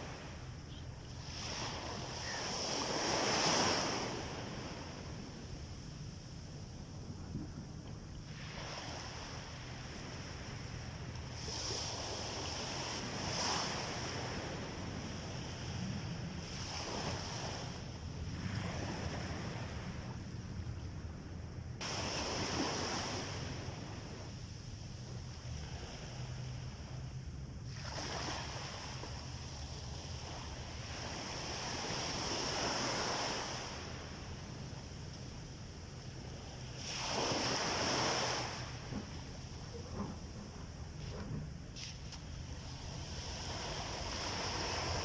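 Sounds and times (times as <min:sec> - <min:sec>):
sea waves breaking on beach: 0:01.2 - 0:07.6, 0:08.2 - 0:20.5, 0:21.8 - 0:45.0
steady low rumble: 0:04.0 - 0:13.2, 0:23.2 - 0:32.4, 0:33.3 - 0:37.6, 0:38.4 - 0:45.0.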